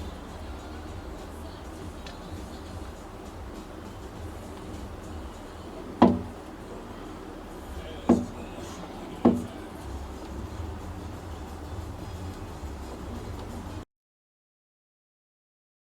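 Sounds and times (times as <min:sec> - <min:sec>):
low steady hum: 0:00.0 - 0:13.8
sharp ringing knocks: 0:06.0 - 0:06.4, 0:08.1 - 0:08.5, 0:09.2 - 0:09.6.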